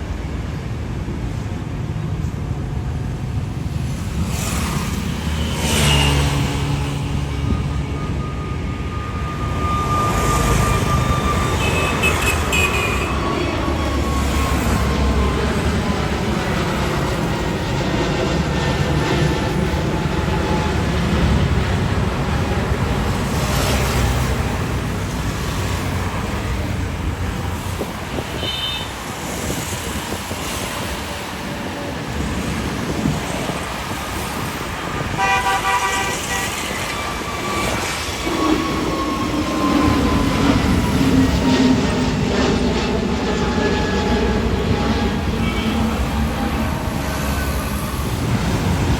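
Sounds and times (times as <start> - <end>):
falling whine: 3.4 - 28.0, 36.1 - 48.9
horn toots: 10.7 - 13.3, 35.1 - 36.9.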